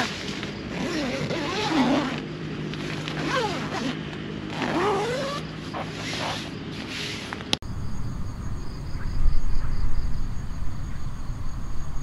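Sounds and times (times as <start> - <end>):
tent zipper rasping: 0.0 - 7.6.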